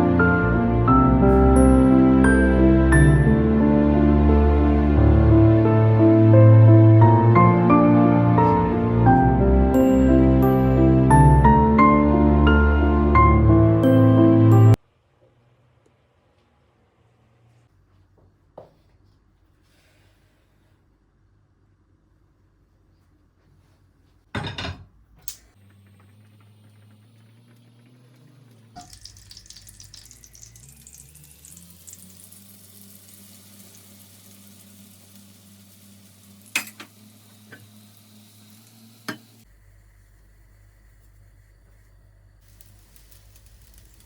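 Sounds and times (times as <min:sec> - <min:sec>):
cookware clattering: 0:24.4 - 0:24.9
steady low hum: 0:24.9 - 0:44.0
food sizzling in hot oil: 0:28.4 - 0:40.1, 0:42.4 - 0:44.0.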